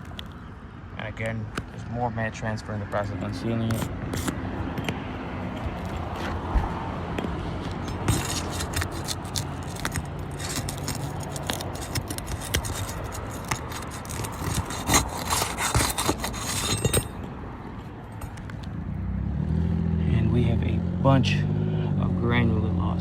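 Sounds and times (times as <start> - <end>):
shingle scraping and crackling: 3.0 - 18.7.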